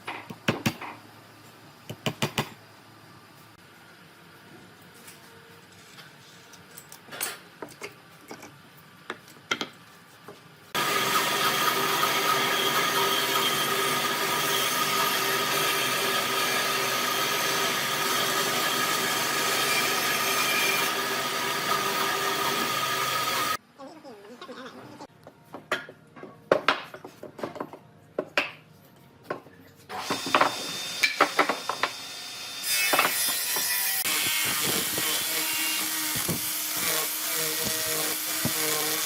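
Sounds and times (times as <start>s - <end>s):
power tool working wood: 10.8s - 23.6s, 29.9s - 39.0s.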